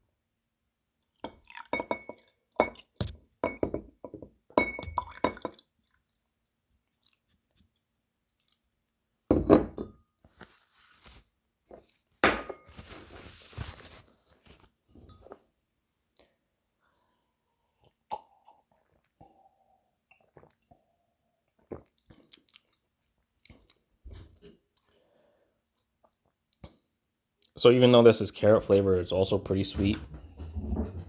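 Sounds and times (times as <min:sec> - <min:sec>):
glass bottle clinking: 0:01.2 - 0:05.6, 0:09.3 - 0:10.0, 0:12.2 - 0:12.7
glass bottle knocks: 0:01.8 - 0:05.6, 0:09.3 - 0:10.0, 0:12.2 - 0:12.6.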